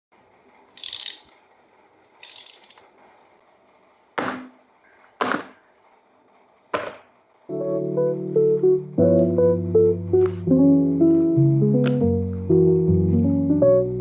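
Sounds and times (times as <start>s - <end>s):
cable reel ratcheting: 0.7s - 1.4s, 2.2s - 3.0s
cable reel snapping: 0.8s - 1.4s, 2.2s - 2.9s.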